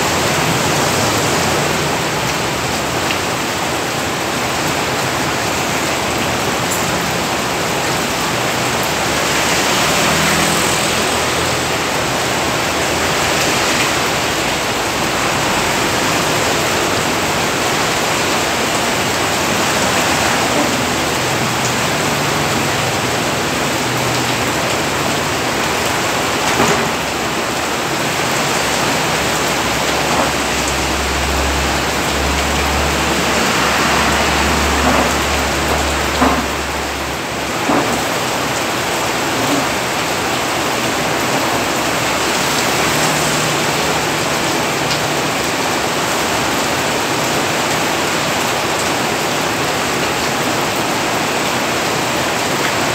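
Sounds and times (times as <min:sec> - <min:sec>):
heavy rain hissing: 0:00.0 - 0:52.9.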